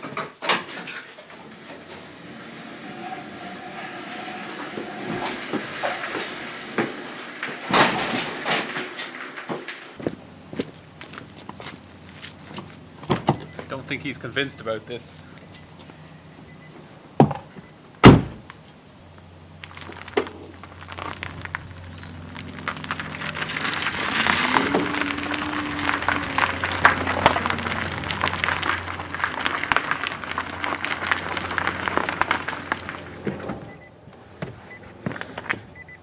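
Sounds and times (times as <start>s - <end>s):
windshield glass crackling: 10.0s - 33.9s.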